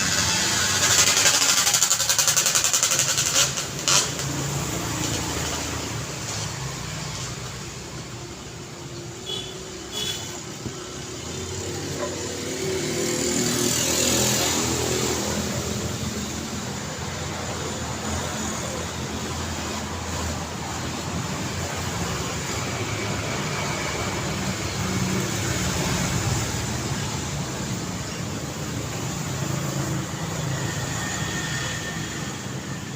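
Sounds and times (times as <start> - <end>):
street traffic: 0.0 - 32.9
vehicle passing close: 10.4 - 32.9.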